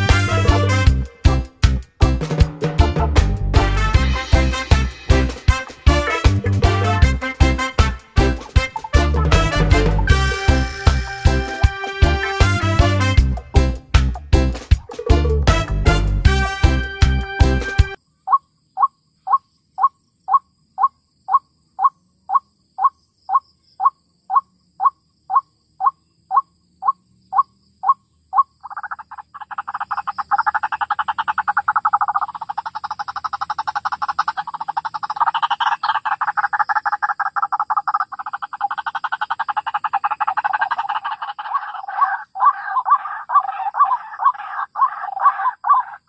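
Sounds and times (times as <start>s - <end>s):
waterhen calling: 14.8s - 15.6s, 23.8s - 46.0s.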